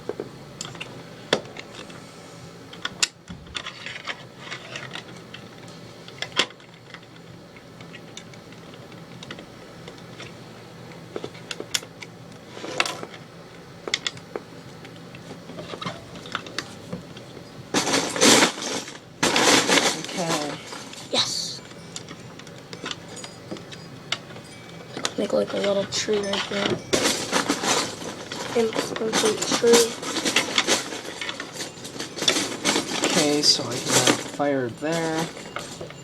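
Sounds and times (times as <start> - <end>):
plastic bricks clattering: 17.7 - 21.0, 25.0 - 35.9.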